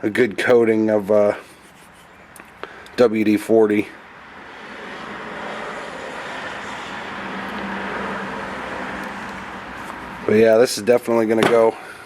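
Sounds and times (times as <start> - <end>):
vehicle passing on road: 3.2 - 11.8.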